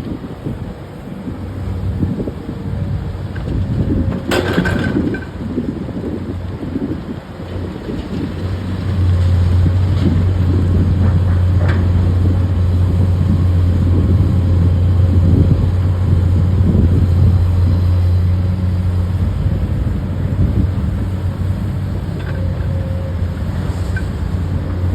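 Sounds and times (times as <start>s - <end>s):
diesel engine humming: 0.0s - 24.9s.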